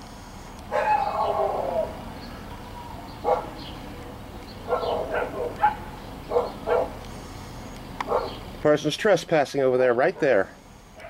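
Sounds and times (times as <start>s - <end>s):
dog barking: 0.7s - 1.6s, 3.2s - 3.6s, 4.7s - 7.0s, 8.1s - 8.4s.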